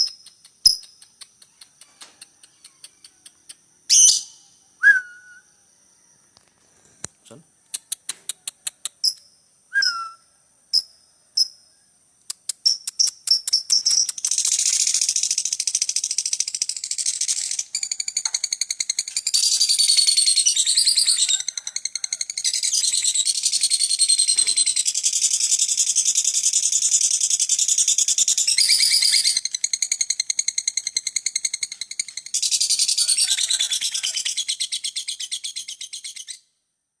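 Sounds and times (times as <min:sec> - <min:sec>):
lovebird chirping and trilling: 0:03.9 - 0:05.4, 0:09.0 - 0:10.2, 0:12.5 - 0:36.4.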